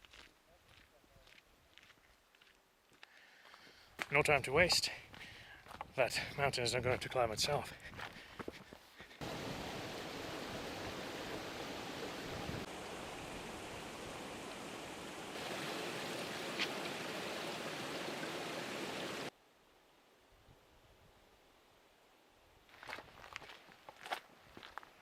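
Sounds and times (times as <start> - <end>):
rushing water: 9.2 - 19.3.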